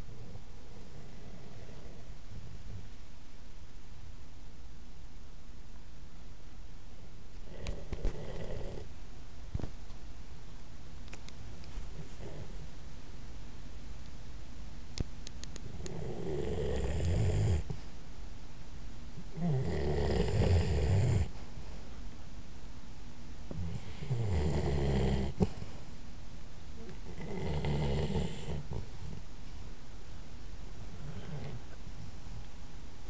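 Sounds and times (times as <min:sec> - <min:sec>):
dog snoring: 0:00.0 - 0:02.2, 0:07.4 - 0:08.9, 0:11.9 - 0:12.7, 0:15.7 - 0:17.8, 0:19.2 - 0:21.4, 0:23.5 - 0:25.7, 0:26.8 - 0:29.3, 0:30.8 - 0:31.8.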